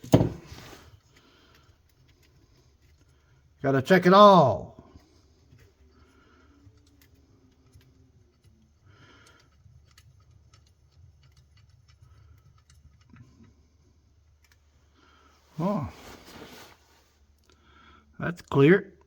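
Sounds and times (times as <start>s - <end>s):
faint clicks of small parts: 0.9s - 3.6s, 4.8s - 15.4s, 17.3s - 17.7s
light handling sounds: 14.2s - 17.6s.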